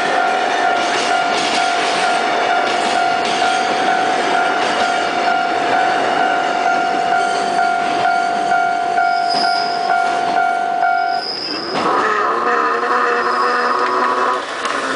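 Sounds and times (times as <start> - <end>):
level crossing warning bell: 0.0 - 11.2
freight train rumbling: 0.0 - 14.9.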